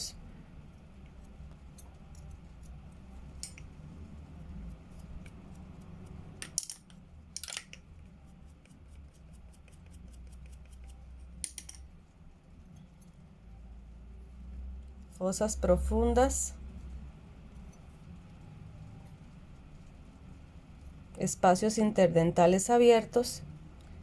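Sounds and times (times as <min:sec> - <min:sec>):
low steady hum: 0:00.0 - 0:24.0.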